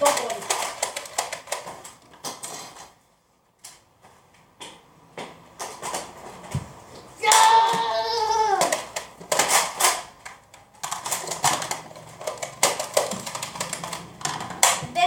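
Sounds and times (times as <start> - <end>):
toy blasters clicking and clattering: 0.0 - 2.9, 7.2 - 15.0
child shrieking: 7.2 - 8.8.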